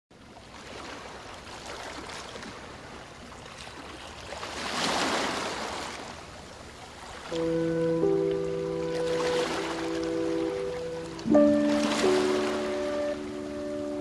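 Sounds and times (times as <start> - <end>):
ocean waves washing: 4.4 - 14.0.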